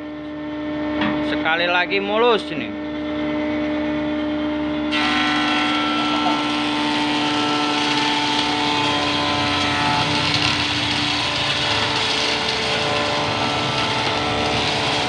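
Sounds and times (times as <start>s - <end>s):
cutter hissing through wood: 4.9s - 15.0s
woodworking machine motor hum: 4.9s - 15.0s.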